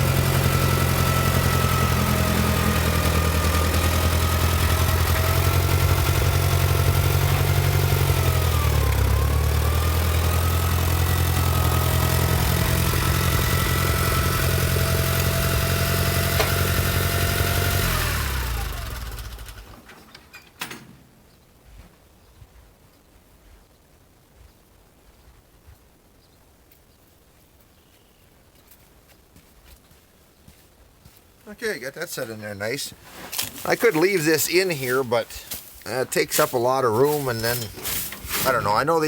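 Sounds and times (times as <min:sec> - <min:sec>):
loader engine running: 0:00.0 - 0:20.2, 0:32.6 - 0:39.0.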